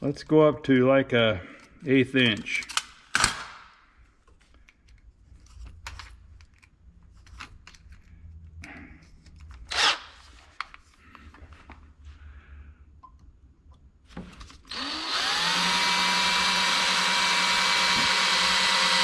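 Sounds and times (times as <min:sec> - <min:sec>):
low shop hum: 0:00.0 - 0:19.0.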